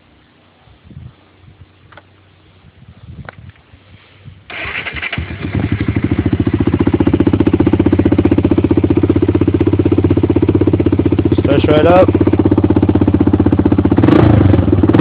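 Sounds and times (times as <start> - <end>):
quad engine starting and idling: 4.5 - 15.0.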